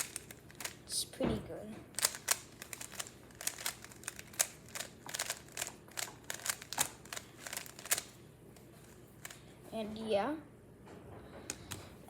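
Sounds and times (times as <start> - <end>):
puzzle cube layers clicking: 2.0 - 8.1.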